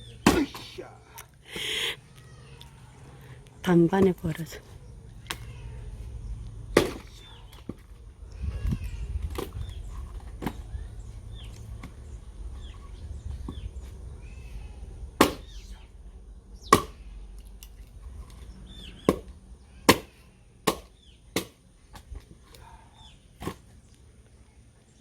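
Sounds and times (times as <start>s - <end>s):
axe splitting logs: 0.2s - 0.8s, 6.7s - 7.9s, 15.2s - 15.6s, 16.7s - 17.0s, 19.0s - 22.2s, 23.4s - 23.7s.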